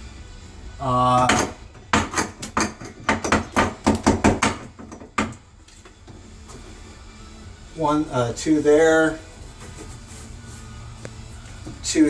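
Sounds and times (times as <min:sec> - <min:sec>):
sharp knocks on window frame: 0:01.3 - 0:05.4.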